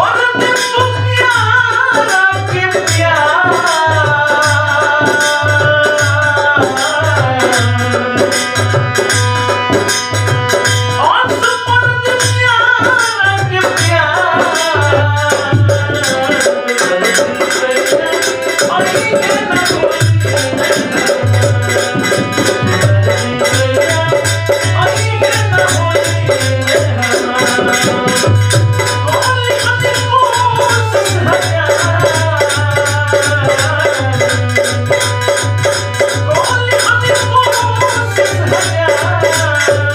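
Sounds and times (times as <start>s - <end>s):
steady drum beat: 0.0s - 39.9s.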